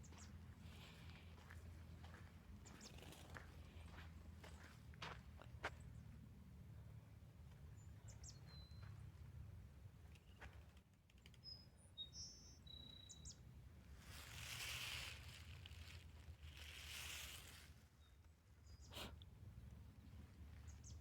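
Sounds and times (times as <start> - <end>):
faint birds chirping: 0.0 - 6.2, 6.8 - 13.6, 17.9 - 21.0
soft rustling hiss: 14.0 - 17.9.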